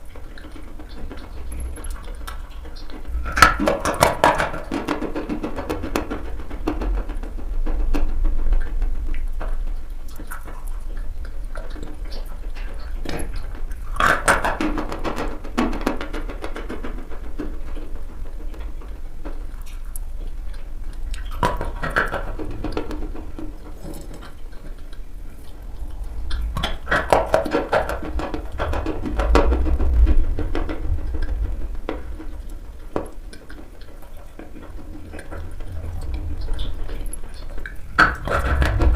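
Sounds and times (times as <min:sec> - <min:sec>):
steady low hum: 0:19.5 - 0:38.9.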